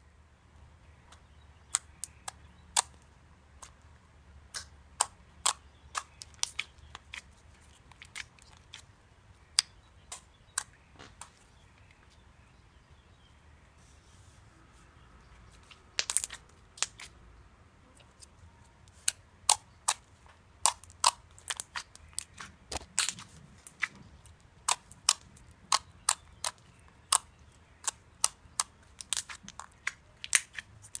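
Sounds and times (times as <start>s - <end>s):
slime popping and crackling: 4.5s - 7.3s, 15.9s - 17.1s, 20.6s - 24.0s, 24.6s - 31.0s.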